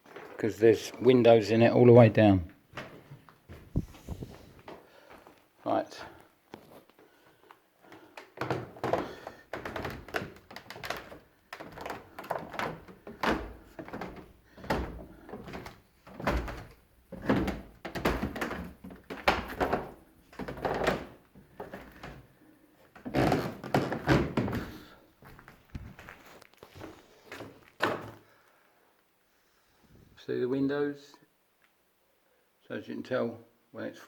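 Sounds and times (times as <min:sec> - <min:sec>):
thumps and knocks: 0:08.4 - 0:22.3, 0:23.0 - 0:26.2.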